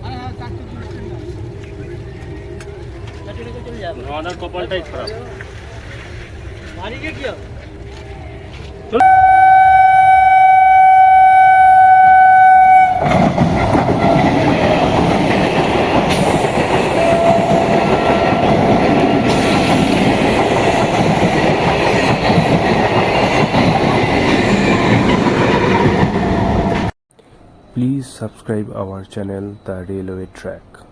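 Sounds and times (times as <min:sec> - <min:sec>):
train running on rails: 0:00.0 - 0:30.8
train horn blast: 0:09.0 - 0:14.3, 0:16.1 - 0:19.8.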